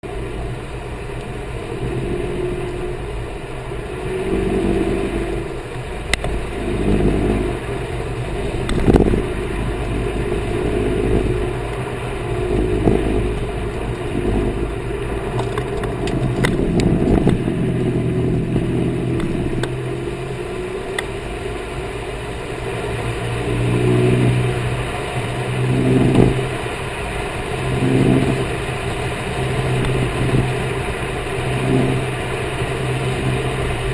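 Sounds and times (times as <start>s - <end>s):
car engine while driving: 0.0s - 33.9s
noise from rear of car: 0.0s - 33.9s.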